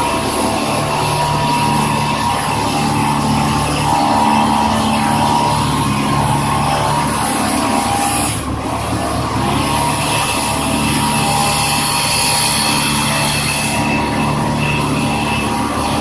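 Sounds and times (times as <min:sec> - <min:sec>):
heavy machinery engine running: 0:00.0 - 0:16.0.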